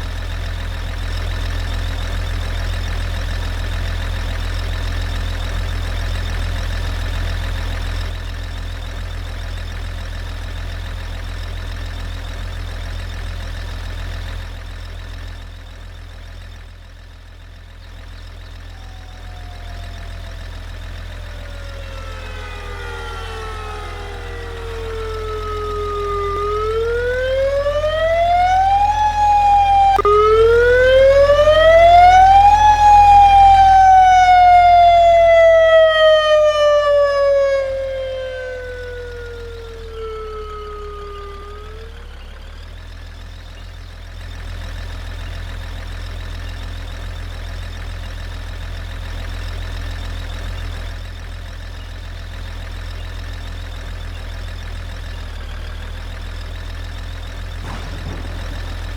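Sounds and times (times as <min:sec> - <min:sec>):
low engine rumble: 0:00.0 - 0:58.9
siren wailing: 0:18.2 - 0:42.6, 0:57.6 - 0:58.9.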